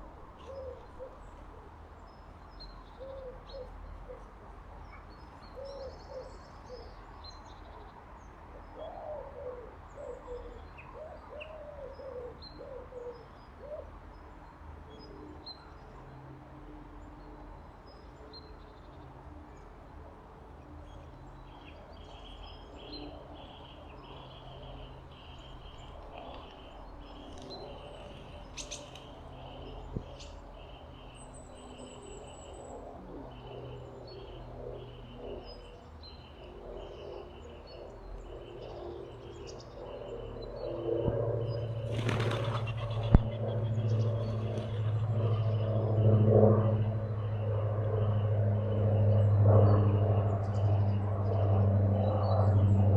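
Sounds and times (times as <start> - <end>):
small birds chirping: 21.0 - 32.7, 41.4 - 46.0
low droning hum: 21.8 - 52.9.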